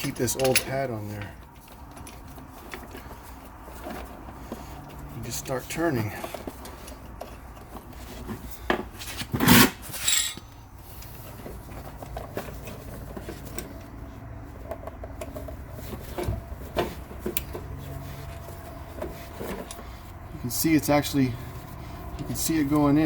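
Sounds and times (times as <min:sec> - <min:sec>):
metal clanks and scraping: 0:00.0 - 0:04.8, 0:06.0 - 0:10.6.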